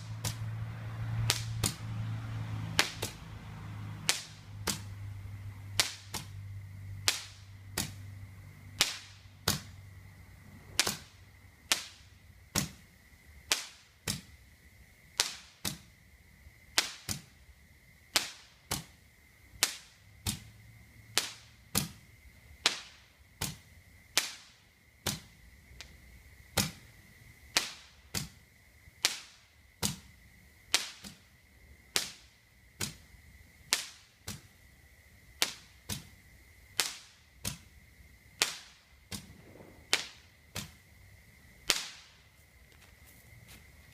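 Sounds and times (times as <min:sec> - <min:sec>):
fireworks bangs: 0:00.0 - 0:12.9, 0:27.5 - 0:28.4, 0:38.3 - 0:41.0, 0:41.6 - 0:42.3.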